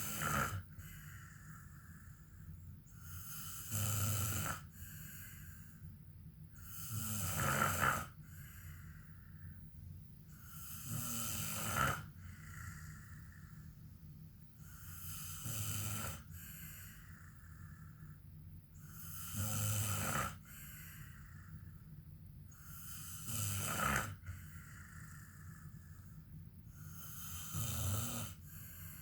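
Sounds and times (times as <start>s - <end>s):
man snoring: 0.0s - 1.8s, 3.1s - 4.7s, 6.6s - 8.2s, 10.4s - 13.6s, 14.9s - 17.6s, 18.9s - 21.4s, 22.7s - 25.7s, 26.9s - 29.0s
quiet breathing: 0.0s - 29.0s.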